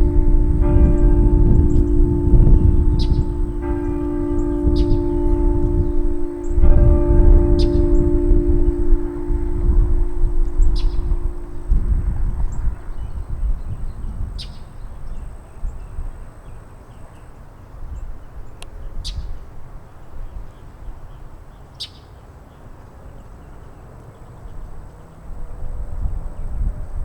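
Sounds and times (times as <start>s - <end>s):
low background rumble: 0.0s - 14.1s.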